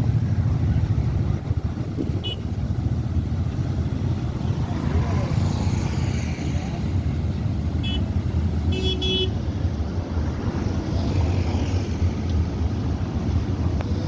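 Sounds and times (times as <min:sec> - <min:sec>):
vehicle horn toots: 0:02.1 - 0:02.5, 0:08.7 - 0:09.4.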